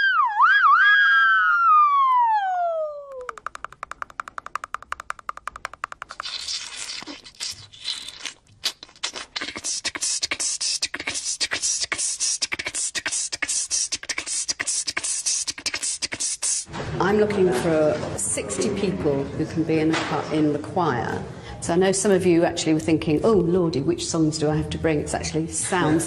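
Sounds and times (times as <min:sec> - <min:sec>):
mouth clicks: 0:03.0 - 0:16.7
hissing ts mouth sounds: 0:03.3 - 0:16.7.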